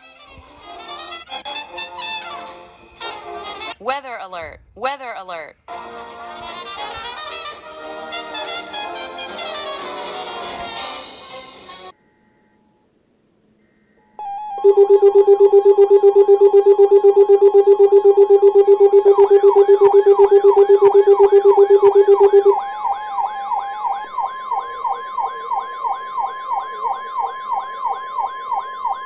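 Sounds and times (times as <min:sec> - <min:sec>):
rapid pulsing alarm beep: 0:14.2 - 0:29.0
siren-like whoop: 0:14.2 - 0:29.0
steady alert tone: 0:14.2 - 0:29.0.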